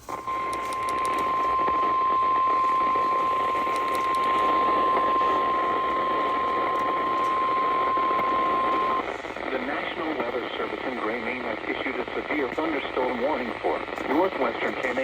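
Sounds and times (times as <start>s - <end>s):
radio static hiss: 0.0s - 15.0s
high-pitched alarm tone: 0.3s - 9.0s.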